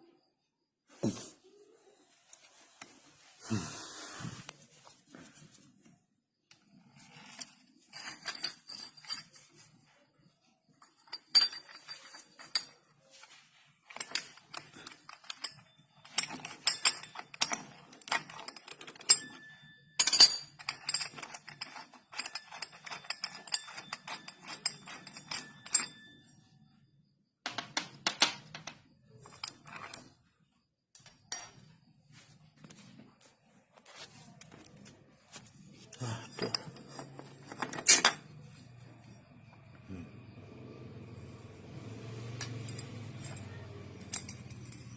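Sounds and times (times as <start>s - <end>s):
metal parts and tools clattering: 6.8s - 9.8s, 10.8s - 26.3s, 27.5s - 30.3s, 34.4s - 39.0s, 42.3s - 44.9s.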